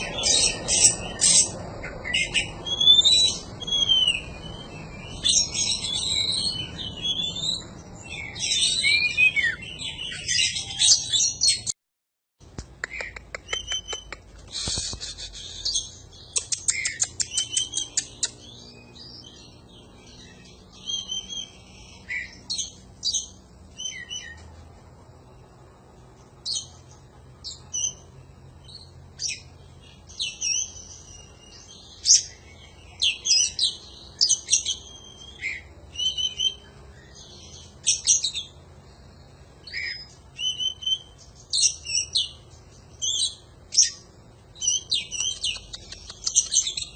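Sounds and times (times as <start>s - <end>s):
bird singing whistled phrases: 0.0s - 11.6s, 13.4s - 19.3s, 20.7s - 24.4s, 33.0s - 37.2s, 39.6s - 42.4s.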